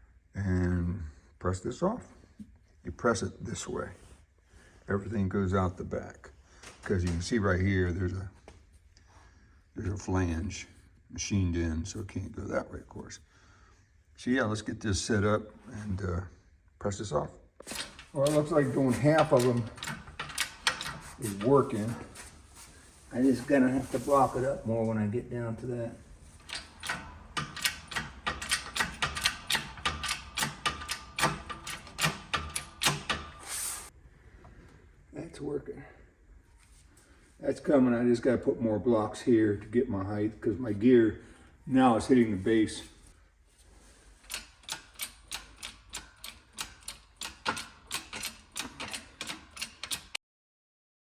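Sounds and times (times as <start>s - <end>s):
sharp metallic clicks: 17.7s - 22.0s, 26.3s - 33.9s, 44.2s - 50.2s.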